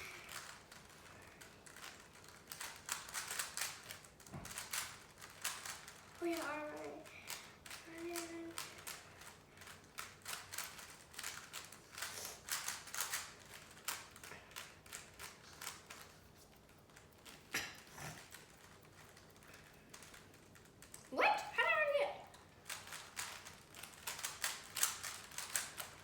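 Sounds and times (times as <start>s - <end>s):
puzzle cube plastic clicking: 0.2s - 6.5s, 7.3s - 16.1s, 22.7s - 26.0s.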